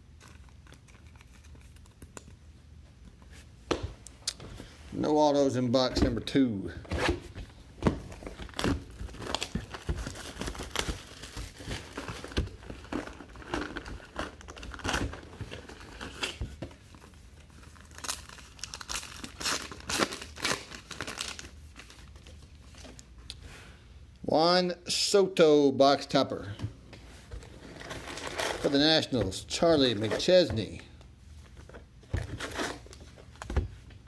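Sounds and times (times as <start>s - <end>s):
wrappers crinkling and tearing: 8.2s - 16.4s, 17.5s - 22.2s.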